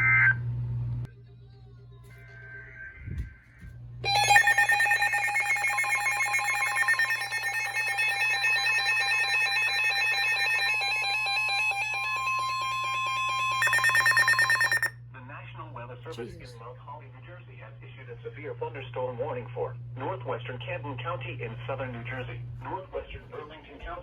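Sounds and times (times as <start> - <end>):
steady warning tones: 3.0 - 15.0
rapid trilling alarm: 4.0 - 15.0.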